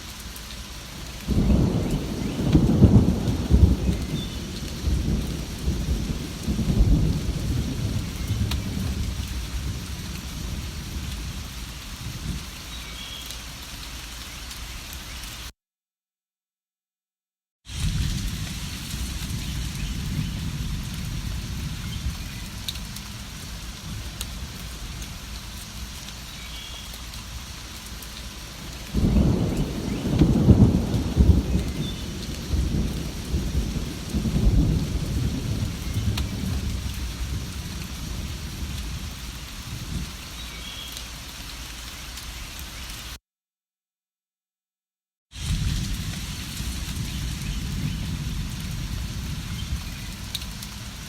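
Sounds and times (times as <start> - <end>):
steady rain falling: 0.0 - 15.5, 17.7 - 43.2, 45.3 - 51.0
low roll of thunder: 1.2 - 12.5, 17.7 - 25.4, 28.6 - 40.2, 45.4 - 51.0.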